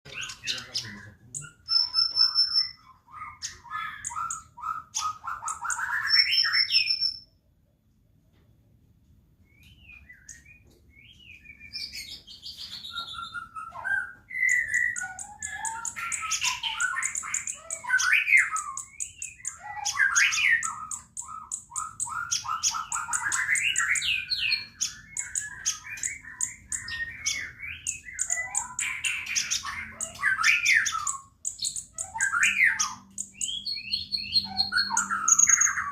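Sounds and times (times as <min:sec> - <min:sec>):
bird chirping and trilling: 0:00.1 - 0:07.4, 0:09.4 - 0:35.9.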